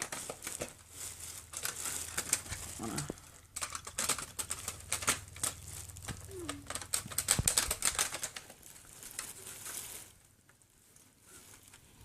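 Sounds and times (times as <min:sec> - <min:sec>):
plastic parts clicking: 0:01.5 - 0:08.6.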